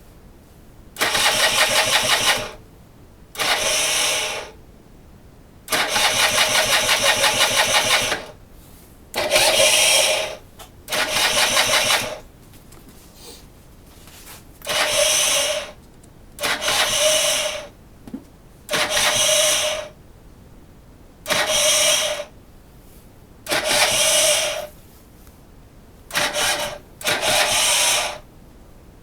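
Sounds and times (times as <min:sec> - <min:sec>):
moped engine cranking: 0:01.0 - 0:02.6, 0:03.4 - 0:04.6, 0:05.7 - 0:08.4, 0:09.2 - 0:12.2, 0:14.6 - 0:15.8, 0:16.4 - 0:17.8, 0:18.7 - 0:20.0, 0:21.3 - 0:22.3, 0:23.5 - 0:24.7, 0:26.1 - 0:28.3.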